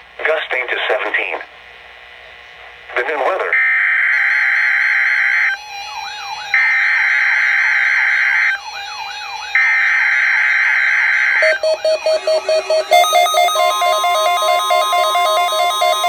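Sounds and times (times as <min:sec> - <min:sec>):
fast warbling electronic tone: 0:11.4 - 0:16.0
quick repeating beeps: 0:11.4 - 0:16.0.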